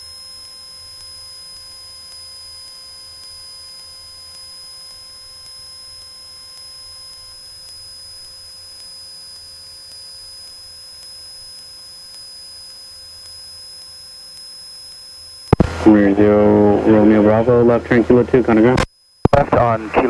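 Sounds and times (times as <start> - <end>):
thin high whine: 15.2 - 20.0
low hum: 15.5 - 18.8
steady electrical hum: 15.5 - 20.0.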